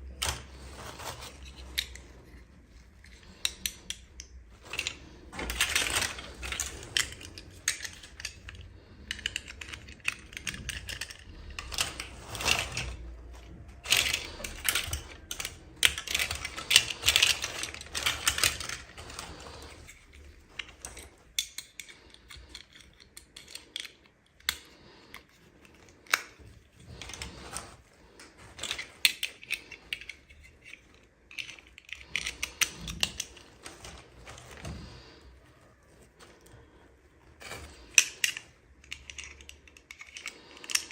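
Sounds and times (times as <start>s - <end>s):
packaging rustling: 0.0s - 3.6s, 4.4s - 21.4s
plastic toy pieces clicking: 0.0s - 27.4s, 28.6s - 35.0s, 37.4s - 40.9s.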